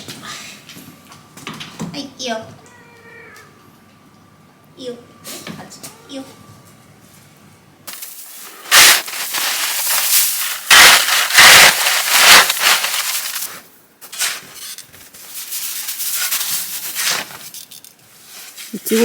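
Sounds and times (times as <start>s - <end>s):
loud rustling and crunching: 7.9s - 19.0s
heavy bumps: 8.7s - 13.5s.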